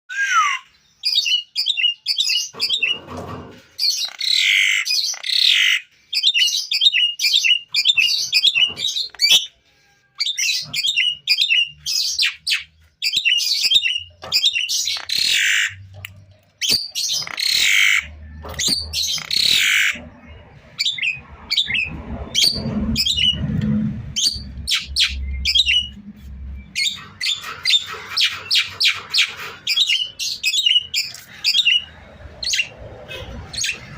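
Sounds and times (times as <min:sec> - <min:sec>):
bird singing chirps and whistles: 0:00.1 - 0:02.9, 0:04.0 - 0:09.5, 0:10.2 - 0:15.8, 0:24.2 - 0:26.0
low rumble: 0:19.9 - 0:27.2.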